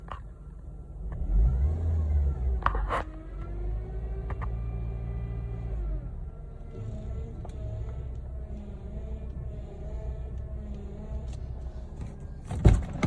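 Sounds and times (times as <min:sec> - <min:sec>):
car engine running: 0:00.0 - 0:13.0
power steering grinding: 0:06.6 - 0:13.0.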